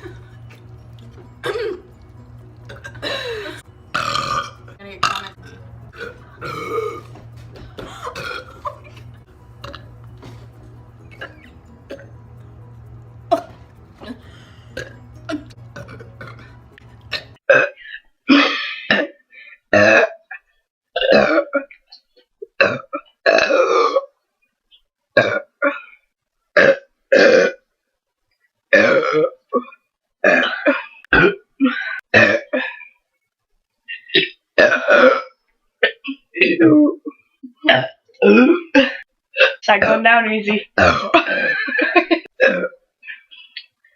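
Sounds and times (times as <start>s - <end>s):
girl burping: 1.4s - 2.0s, 2.6s - 7.2s, 7.8s - 9.9s, 11.1s - 12.1s, 13.3s - 20.4s, 21.0s - 21.7s, 22.6s - 24.1s, 26.6s - 27.6s, 28.7s - 32.8s, 34.0s - 39.9s, 40.8s - 42.8s.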